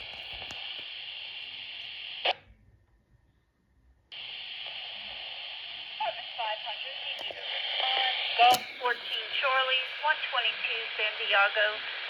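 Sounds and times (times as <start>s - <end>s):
two-way radio static hiss: 0.0s - 2.3s, 4.2s - 12.0s.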